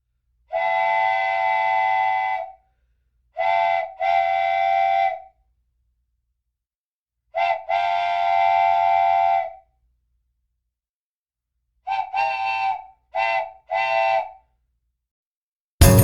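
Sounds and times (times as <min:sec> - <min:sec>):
train whistle blowing: 0:00.5 - 0:02.6, 0:03.4 - 0:05.3, 0:07.4 - 0:09.6, 0:11.9 - 0:14.4.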